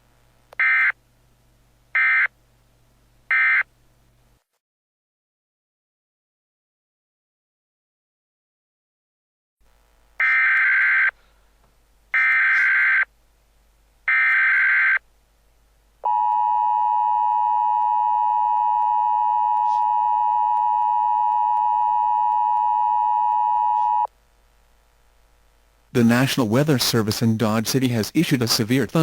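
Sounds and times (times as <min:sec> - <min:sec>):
two-tone attention signal: 0:16.1 - 0:24.1.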